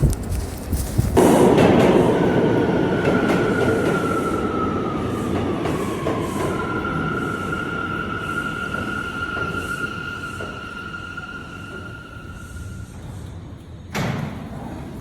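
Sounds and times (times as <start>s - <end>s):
subway train rumbling on rails: 0.0s - 15.0s
high wheel squeal: 6.4s - 13.3s.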